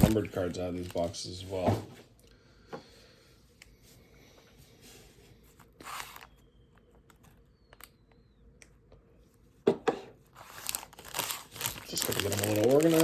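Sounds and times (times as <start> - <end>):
foil packs rustling: 0.0 - 1.6, 10.4 - 13.0.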